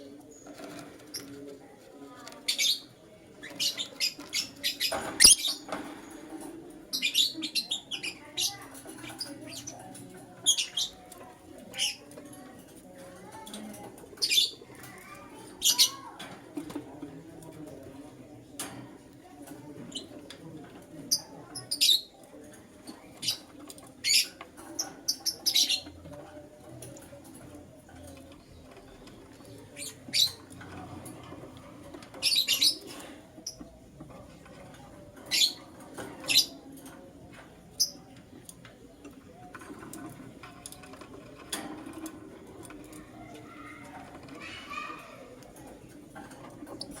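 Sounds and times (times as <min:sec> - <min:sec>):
lovebirds chirping: 0:02.5 - 0:05.7.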